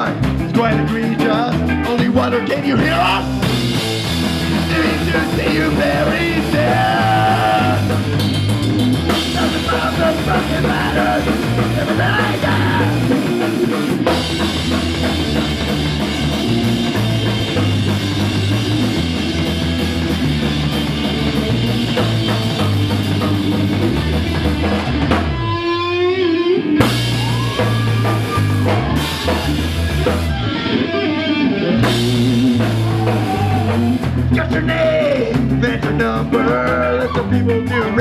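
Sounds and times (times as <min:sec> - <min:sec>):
punk rock band playing: 0:00.0 - 0:38.0
bending wavering guitar line: 0:24.8 - 0:34.2, 0:36.3 - 0:38.0.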